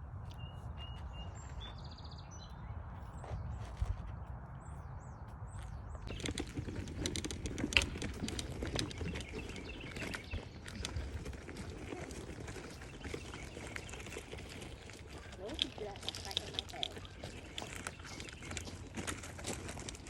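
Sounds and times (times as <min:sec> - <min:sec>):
small birds chirping: 0:00.0 - 0:20.0
crackling rustle with sharp clicks: 0:06.0 - 0:20.0.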